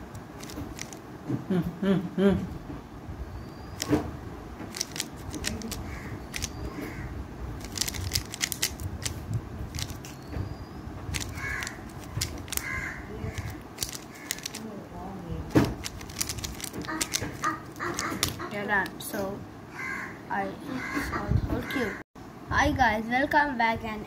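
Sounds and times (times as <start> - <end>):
puzzle cube clicking: 0.1 - 1.0, 4.7 - 6.6, 7.6 - 10.2, 11.1 - 12.7, 13.4 - 14.6, 15.5 - 18.4.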